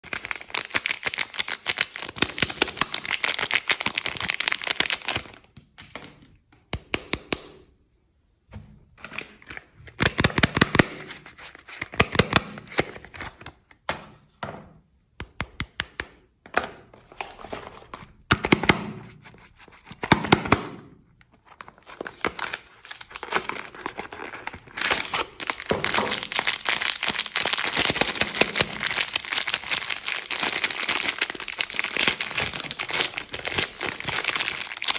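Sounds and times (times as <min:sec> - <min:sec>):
packaging crinkling and tearing: 0:00.0 - 0:06.1, 0:21.4 - 0:34.9.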